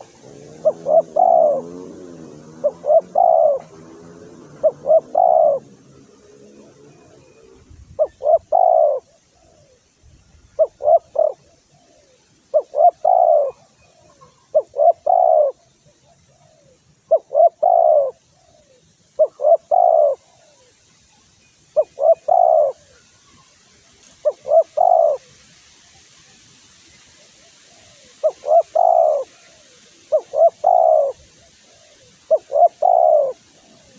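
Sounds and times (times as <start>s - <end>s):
dove cooing: 0.0s - 20.7s, 21.8s - 23.4s, 24.2s - 25.4s, 27.2s - 33.9s.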